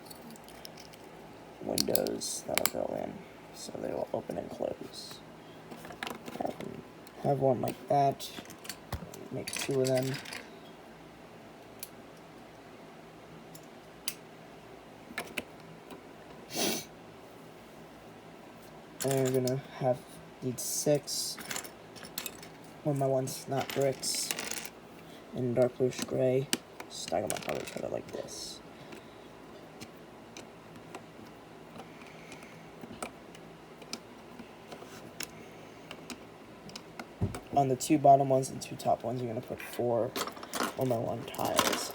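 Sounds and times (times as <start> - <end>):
plastic pieces rustling: 40.2 - 41.9.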